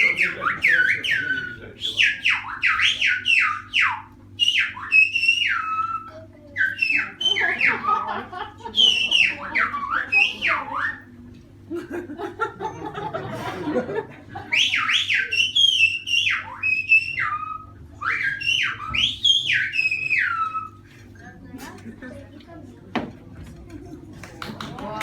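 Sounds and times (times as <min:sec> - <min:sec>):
whistled speech: 0:00.0 - 0:11.3, 0:14.5 - 0:21.7
audience murmur: 0:00.0 - 0:25.0.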